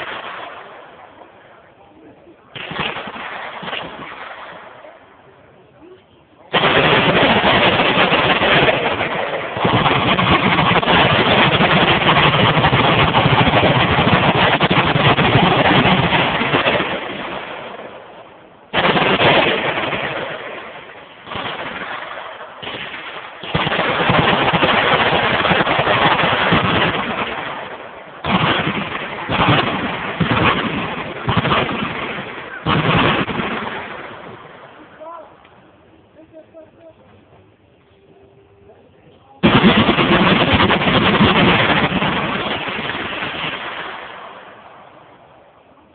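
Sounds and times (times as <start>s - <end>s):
machine gun fire: 2.5s - 4.8s, 6.5s - 17.9s, 18.7s - 34.7s, 39.4s - 44.4s.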